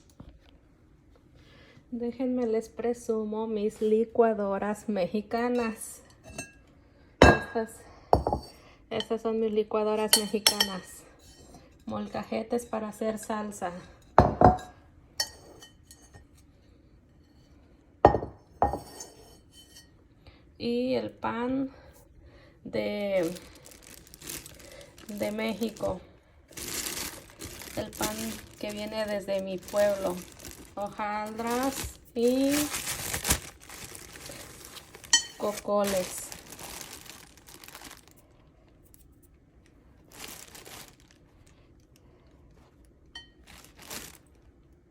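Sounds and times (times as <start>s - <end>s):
bread bag rustling and crinkling: 22.8s - 39.2s, 39.9s - 44.7s.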